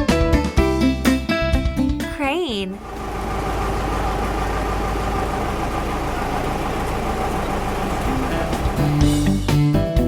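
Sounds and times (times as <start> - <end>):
upbeat guitar and keyboard music: 0.0 - 2.8, 8.0 - 10.0.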